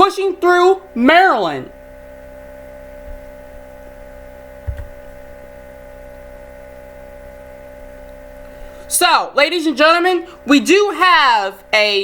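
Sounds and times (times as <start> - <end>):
steady electrical hum: 0.0 - 12.0
low thump: 4.6 - 5.4.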